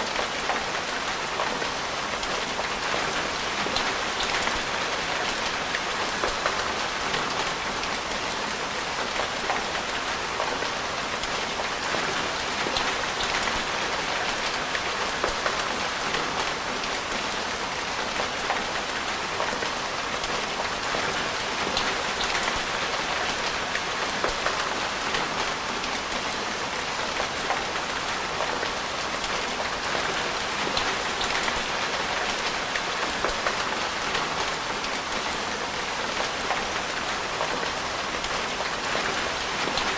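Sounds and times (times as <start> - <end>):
steady rain hiss: 0.0 - 39.9
raindrops ticking on surface: 9.1 - 39.9.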